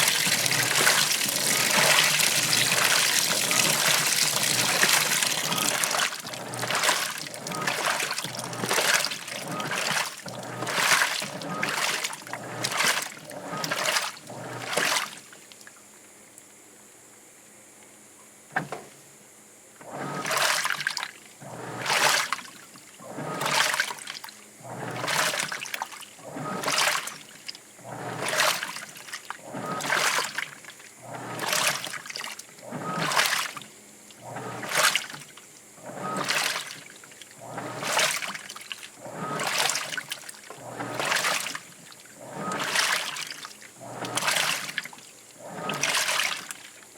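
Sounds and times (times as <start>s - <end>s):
washing machine sloshing: 0.0s - 15.8s, 19.8s - 46.9s.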